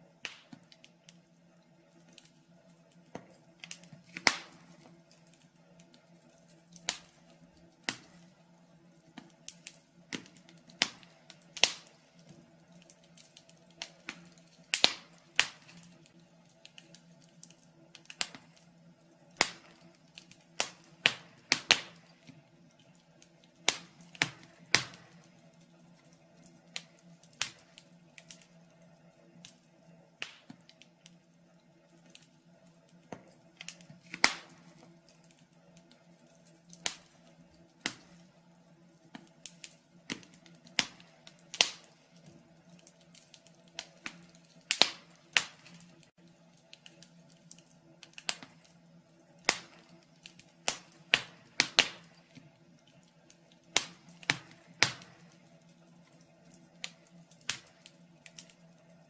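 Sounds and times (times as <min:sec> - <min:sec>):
wood fire crackling: 0:00.0 - 0:59.0
sharp fire pops: 0:00.2 - 0:01.2, 0:03.1 - 0:05.2, 0:06.7 - 0:08.3, 0:09.1 - 0:18.7, 0:19.4 - 0:22.3, 0:23.2 - 0:25.3, 0:26.4 - 0:28.5, 0:30.2 - 0:31.2, 0:33.2 - 0:34.9, 0:36.7 - 0:38.2, 0:39.0 - 0:42.2, 0:42.8 - 0:46.0, 0:46.8 - 0:48.8, 0:49.4 - 0:52.4, 0:53.7 - 0:55.4, 0:56.8 - 0:58.5.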